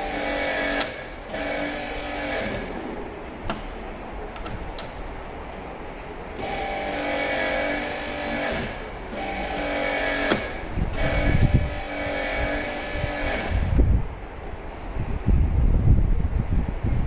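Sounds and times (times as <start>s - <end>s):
milling machine whining: 0.0s - 3.5s, 6.4s - 13.8s.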